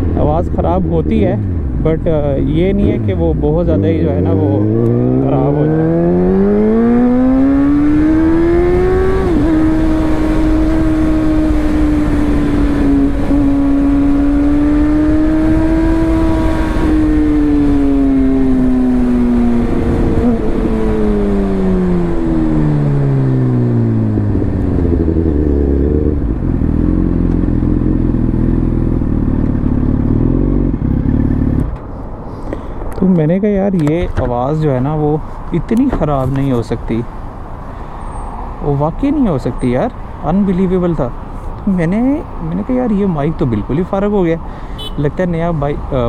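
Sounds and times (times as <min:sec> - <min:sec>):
heavy wind noise: 0:00.0 - 0:30.9
motorcycle engine revving high: 0:00.9 - 0:31.7.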